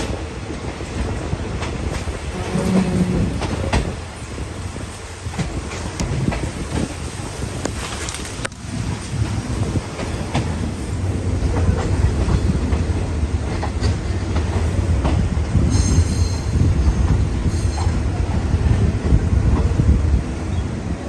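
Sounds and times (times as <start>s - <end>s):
wheels clacking over rail joints: 0.0s - 18.8s
train rumbling on rails: 0.0s - 21.0s
high wheel squeal: 15.7s - 18.0s.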